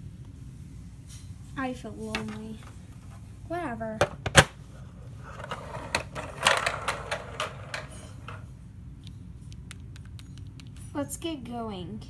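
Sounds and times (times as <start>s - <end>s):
steady low hum: 0.0s - 12.0s
plastic toys clicking and tapping: 5.9s - 8.4s.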